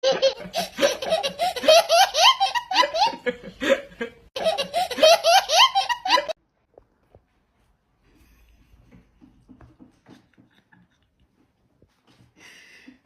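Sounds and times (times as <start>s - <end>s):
person laughing hard: 0.0s - 6.4s.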